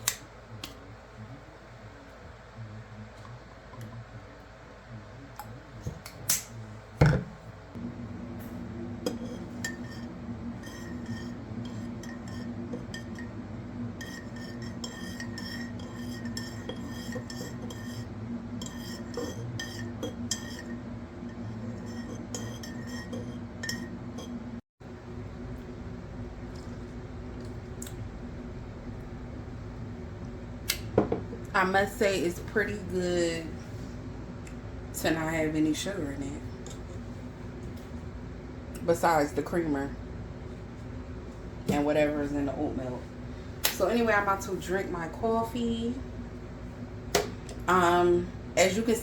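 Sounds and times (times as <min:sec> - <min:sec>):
steady low hum: 0:00.0 - 0:49.0.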